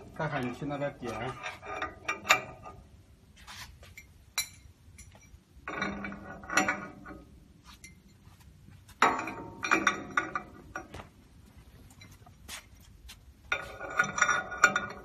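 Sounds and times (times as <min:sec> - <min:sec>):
metal parts clanking and rattling: 0:00.0 - 0:02.9, 0:04.0 - 0:08.2, 0:08.9 - 0:11.1, 0:13.5 - 0:15.0.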